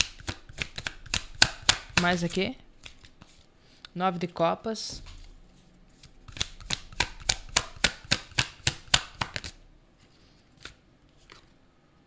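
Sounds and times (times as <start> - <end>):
cards being shuffled: 0.0 - 3.5, 4.9 - 11.6.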